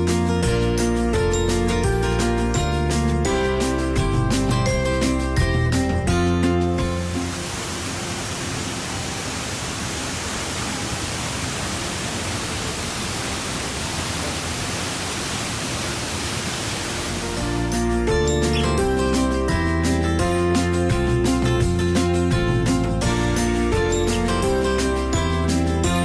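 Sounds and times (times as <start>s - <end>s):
guitar background music: 0.0s - 7.4s, 17.3s - 26.0s
waterfall roaring: 7.0s - 17.8s.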